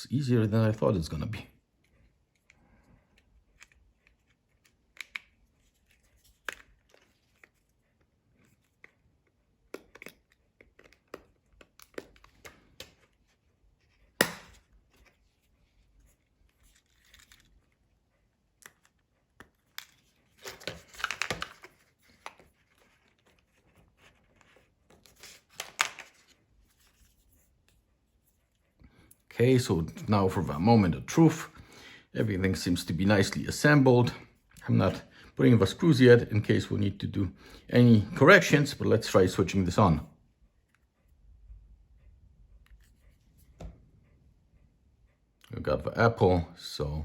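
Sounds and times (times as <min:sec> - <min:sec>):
small clicks and taps from handling phone: 0:08.4 - 0:13.2
crinkling rustling: 0:14.7 - 0:27.8.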